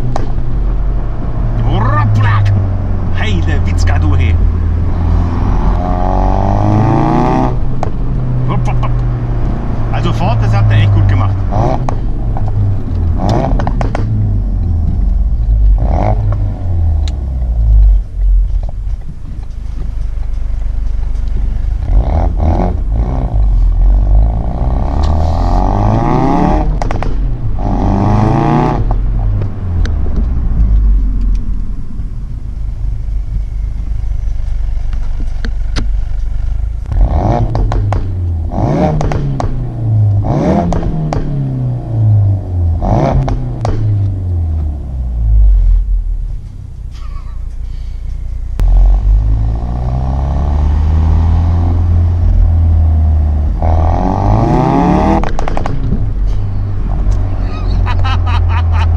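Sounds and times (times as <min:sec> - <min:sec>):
exhaust cracks and pops: 0:00.0 - 0:00.6, 0:11.7 - 0:22.0, 0:26.6 - 0:27.4, 0:33.3 - 0:39.8, 0:40.6 - 0:41.6, 0:43.1 - 0:44.2, 0:55.1 - 0:57.3
car engine revving: 0:00.0 - 0:47.0, 0:48.2 - 0:58.9.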